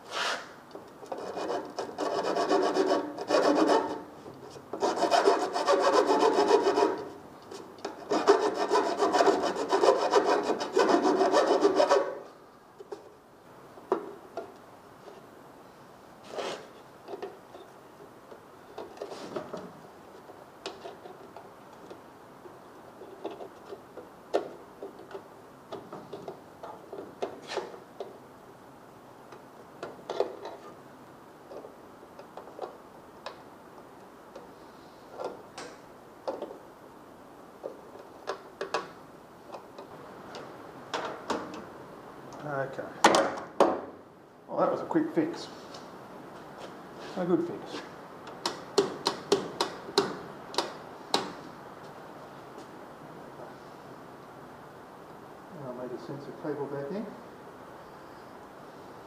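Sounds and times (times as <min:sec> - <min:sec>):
clicks and taps of hand work: 0:48.3 - 0:51.4.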